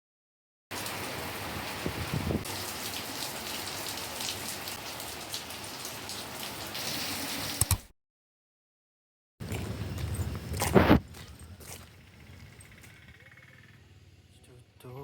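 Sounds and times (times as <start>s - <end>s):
rain falling steadily: 0.7s - 7.6s.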